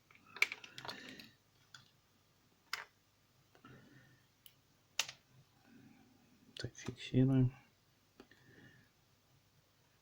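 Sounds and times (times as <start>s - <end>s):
plastic parts clicking and tapping: 0.1s - 2.0s, 2.7s - 3.0s, 4.4s - 5.2s.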